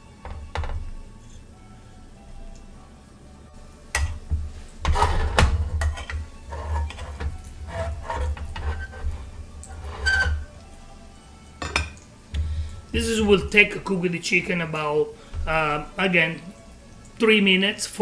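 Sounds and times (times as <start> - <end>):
background music: 0.0 - 18.0
utensil knocking against pan: 0.2 - 1.0, 3.9 - 10.6, 11.6 - 13.8.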